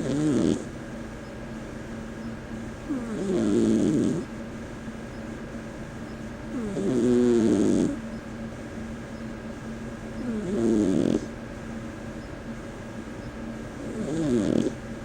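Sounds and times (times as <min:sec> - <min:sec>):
kitten snoring: 0:00.0 - 0:00.7, 0:02.9 - 0:04.3, 0:06.5 - 0:08.0, 0:10.2 - 0:11.3, 0:13.8 - 0:14.8.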